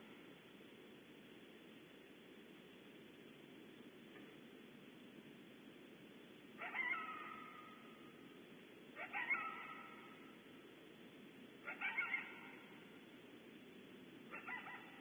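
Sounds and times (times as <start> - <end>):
steady hiss: 0.0 - 15.0
coyote barking and howling: 6.6 - 8.0, 8.9 - 10.3, 11.6 - 12.9, 14.3 - 15.0.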